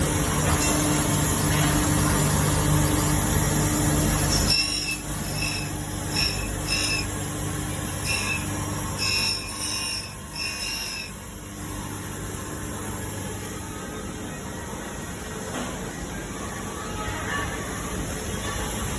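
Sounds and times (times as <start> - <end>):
knife grinder motor humming: 3.2 - 11.8
short high squeals: 4.5 - 7.2, 8.0 - 11.2.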